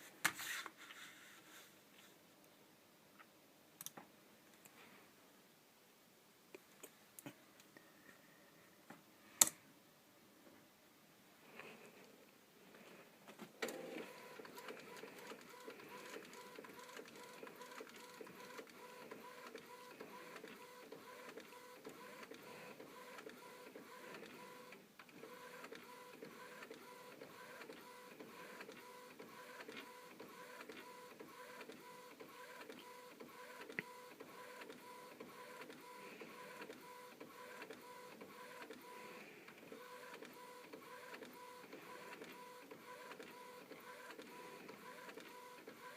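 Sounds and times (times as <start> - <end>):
inkjet printer whirring: 13.6 - 45.9.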